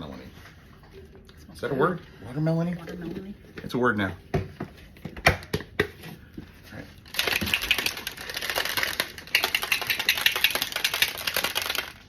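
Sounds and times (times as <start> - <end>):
fast rattling and clicking: 7.1 - 12.0.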